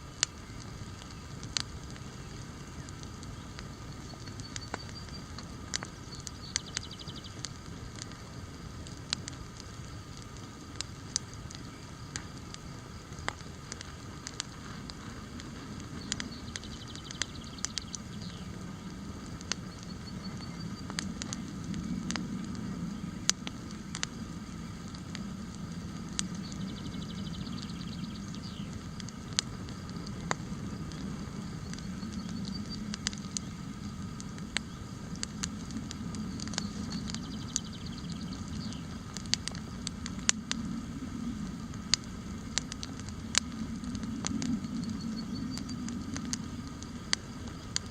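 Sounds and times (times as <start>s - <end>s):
campfire crackling and popping: 0.0s - 47.9s
bird singing: 0.1s - 7.6s, 15.6s - 30.1s, 30.7s - 40.8s, 41.6s - 46.9s.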